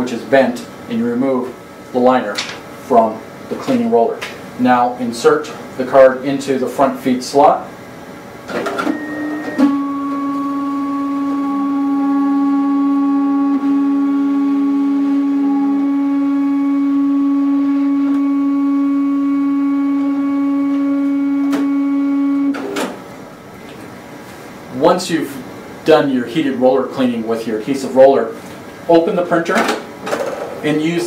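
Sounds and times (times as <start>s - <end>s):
printer motors humming: 8.5s - 23.8s.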